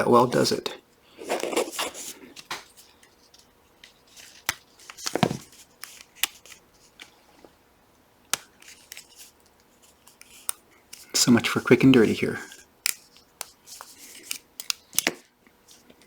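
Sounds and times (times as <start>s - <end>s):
small tool clicking and scraping: 8.3s - 11.2s, 11.9s - 16.0s.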